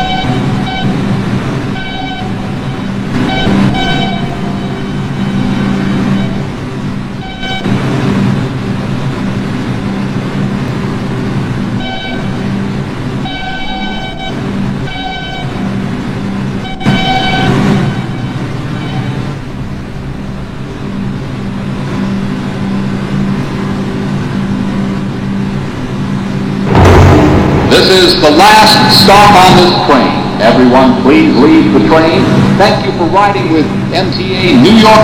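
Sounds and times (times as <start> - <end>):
high-pitched ringing tone: 0.0 - 7.8, 11.6 - 12.6, 13.2 - 19.4
subway train rumble: 0.0 - 35.0.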